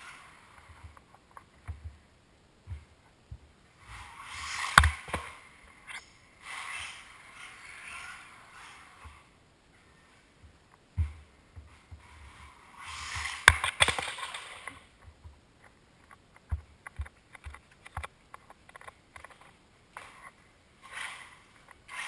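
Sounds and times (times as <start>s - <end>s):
rc car motor and tyre noise: 0.0s - 1.0s, 3.8s - 10.2s, 11.9s - 14.9s, 20.0s - 22.0s
small clicks and low thumps: 0.5s - 4.1s, 10.4s - 12.5s, 13.1s - 20.4s.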